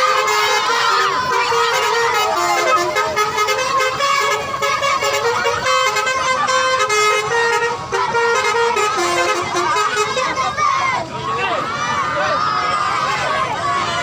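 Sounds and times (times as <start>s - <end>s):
bus horn playing a melody: 0.0s - 10.4s.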